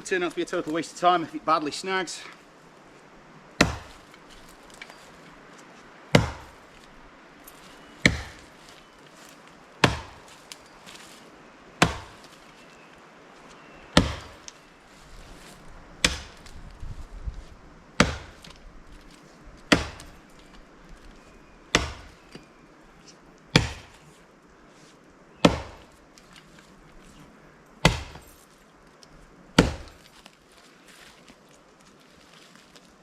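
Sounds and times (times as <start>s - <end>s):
axe chopping into tree trunk: 3.6s - 4.2s, 6.1s - 6.6s, 8.0s - 8.5s, 9.8s - 10.5s, 11.8s - 12.4s, 13.9s - 14.5s, 16.0s - 16.6s, 18.0s - 18.6s, 19.7s - 20.2s, 21.7s - 22.5s, 23.5s - 24.0s, 25.4s - 25.9s, 27.8s - 28.3s, 29.6s - 30.1s.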